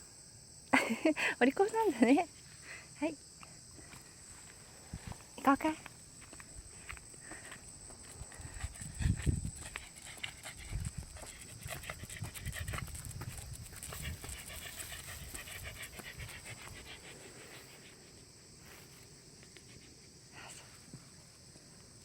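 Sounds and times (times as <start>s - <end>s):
dog panting: 8.1s - 17.9s.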